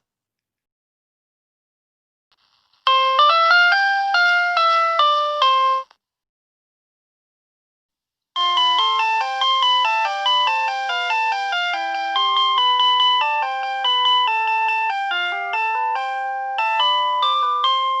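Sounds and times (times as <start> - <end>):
electronic bell chime melody: 8.4 - 18.0.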